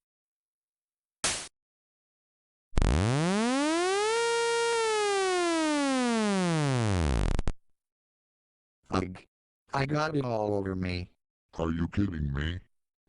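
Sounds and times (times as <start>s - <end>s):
tornado siren winding up and down: 2.8s - 7.5s.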